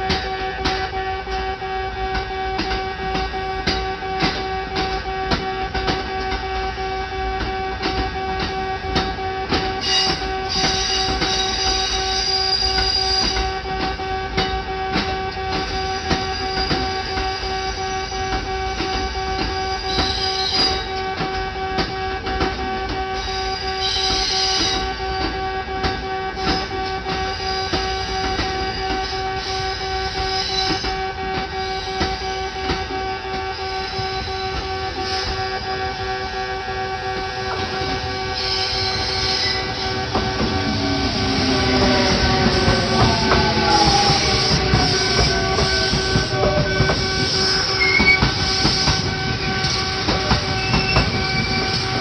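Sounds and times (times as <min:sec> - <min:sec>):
train running over crossing: 0:00.0 - 0:52.0
high-pitched wheel squeals: 0:09.8 - 0:13.5, 0:19.2 - 0:20.9, 0:37.5 - 0:52.0.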